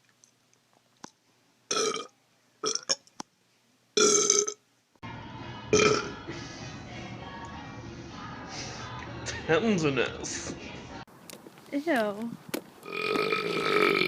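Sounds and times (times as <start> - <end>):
person burping: 1.7 - 3.0, 4.0 - 4.6, 5.8 - 6.2, 12.8 - 14.0.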